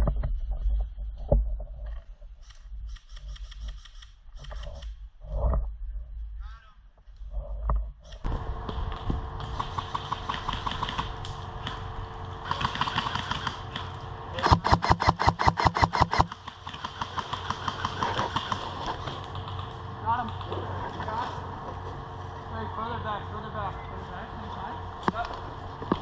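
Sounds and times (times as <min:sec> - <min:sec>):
airsoft guns firing full auto: 0:08.4 - 0:21.4.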